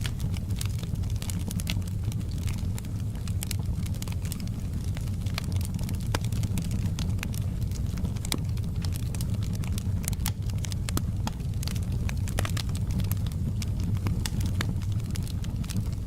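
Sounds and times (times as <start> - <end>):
fire crackling and popping: 0.0 - 16.0
low rumble of flames: 0.0 - 16.0.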